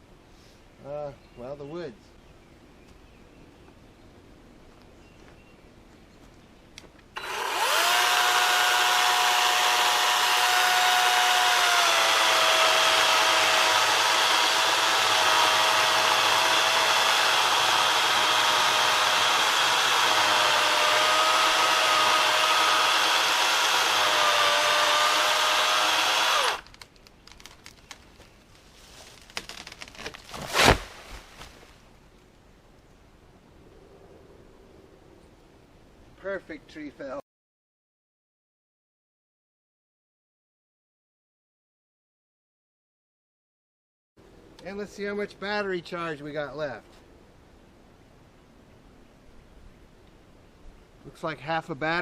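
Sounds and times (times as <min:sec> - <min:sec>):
electric chainsaw cutting wood: 0:07.2 - 0:26.7
wood crackling: 0:08.7 - 0:33.0
tree cracking as it falls: 0:26.2 - 0:28.2, 0:28.9 - 0:31.8.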